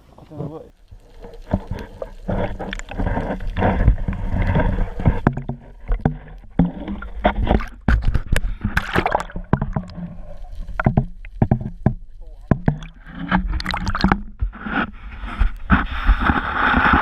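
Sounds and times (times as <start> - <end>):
water sloshing: 0.0 - 16.6
knocks and clatter in boat: 2.3 - 8.5, 10.7 - 14.6.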